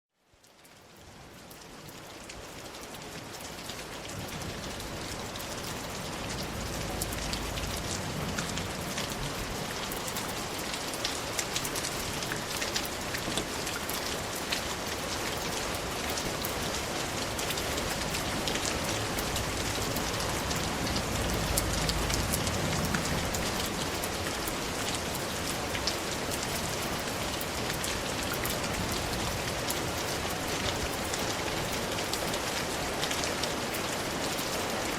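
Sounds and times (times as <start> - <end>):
steady rainfall: 0.1 - 34.9
raindrops ticking close by: 0.2 - 34.9
low rumble: 4.7 - 9.9, 18.8 - 23.9.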